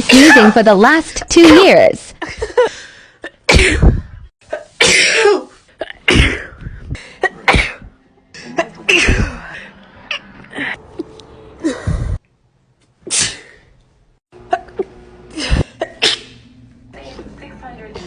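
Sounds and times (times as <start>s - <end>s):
person sneezing: 3.5s - 6.6s, 15.4s - 16.4s.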